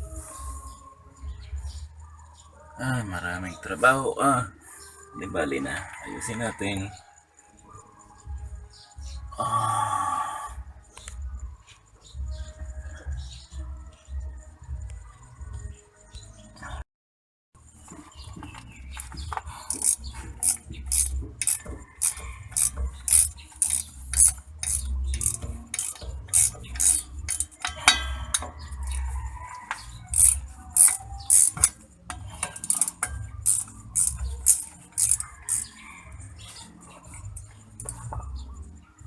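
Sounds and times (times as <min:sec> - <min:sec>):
hand tools clinking on metal: 0:18.4 - 0:38.7.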